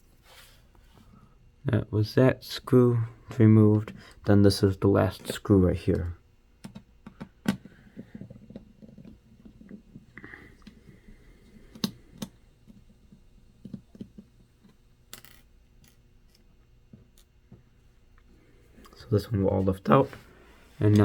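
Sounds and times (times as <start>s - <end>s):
screwdriver clicks and taps: 6.0s - 7.6s.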